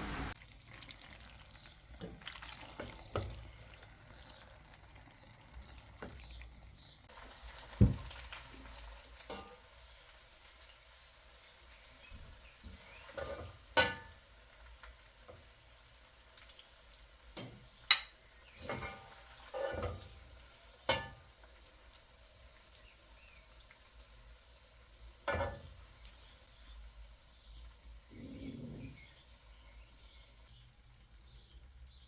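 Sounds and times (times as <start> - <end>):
kitchenware knocking and clinking: 13.2 - 14.1, 17.4 - 20.2, 20.9 - 21.2, 25.3 - 25.8.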